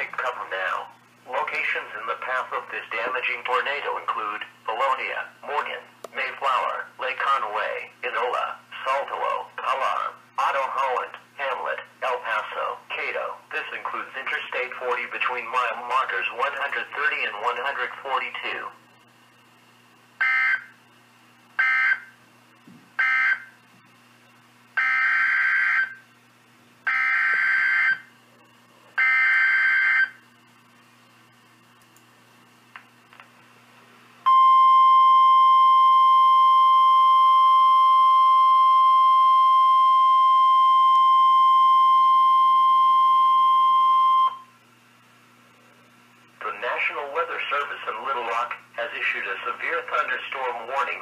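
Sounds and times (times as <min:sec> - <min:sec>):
steady warning alarm tone: 0:20.2 - 0:20.8, 0:21.6 - 0:22.2, 0:23.0 - 0:23.6, 0:24.8 - 0:26.1, 0:26.8 - 0:28.1, 0:29.0 - 0:30.3, 0:34.3 - 0:44.5.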